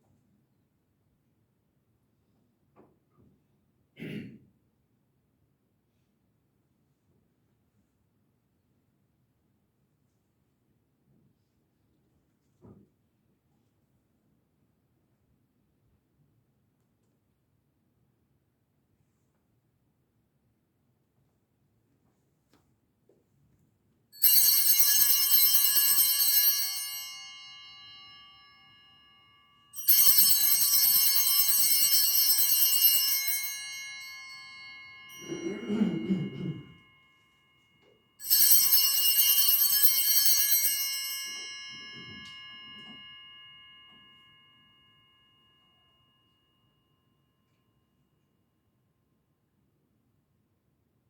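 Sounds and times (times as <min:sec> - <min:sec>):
small bells ringing: 0:24.2 - 0:47.3.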